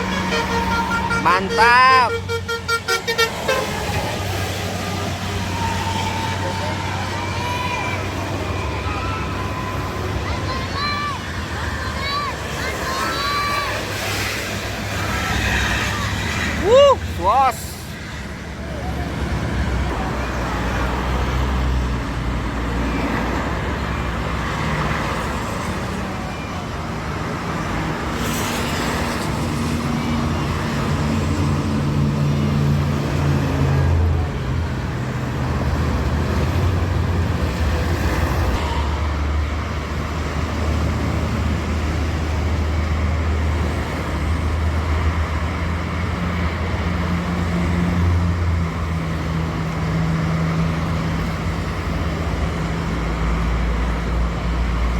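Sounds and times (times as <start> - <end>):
engine drone in traffic: 0.0 - 54.9
road tyre noise: 0.0 - 54.9.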